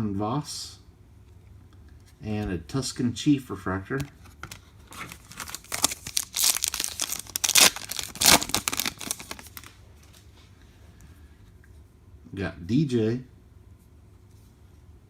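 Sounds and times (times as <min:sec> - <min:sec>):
foil wrapper crinkling and tearing: 0:04.4 - 0:09.8.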